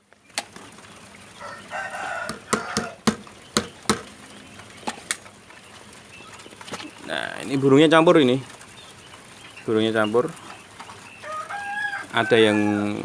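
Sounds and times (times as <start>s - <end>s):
quail calling: 0.6s - 13.0s
sharp knocks: 2.2s - 4.2s.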